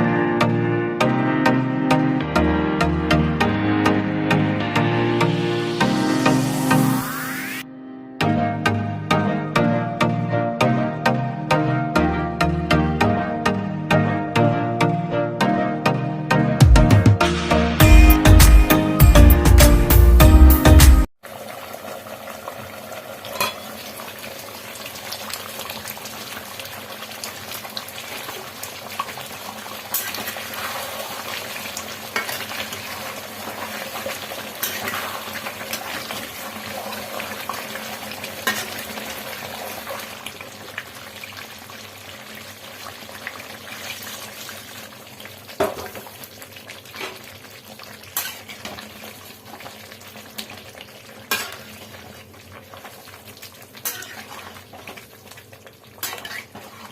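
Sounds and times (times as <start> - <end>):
curry sizzling in a pan: 21.2 - 56.9
spoon scraping a pan: 53.8 - 54.6, 56.0 - 56.9.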